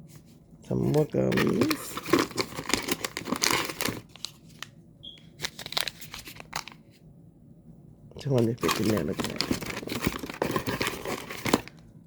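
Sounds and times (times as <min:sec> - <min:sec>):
packaging crinkling: 0:00.8 - 0:04.7, 0:05.4 - 0:06.8, 0:08.3 - 0:11.8.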